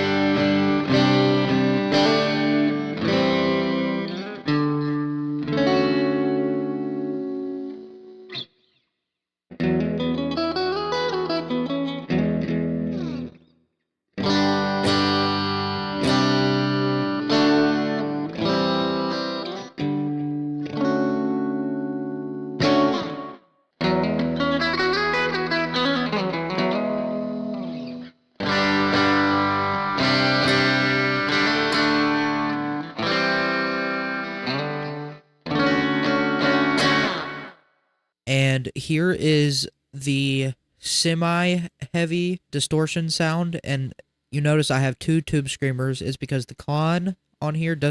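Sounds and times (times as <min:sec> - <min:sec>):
clean electric guitar: 0:00.0 - 0:08.8, 0:09.5 - 0:13.5, 0:14.2 - 0:37.6.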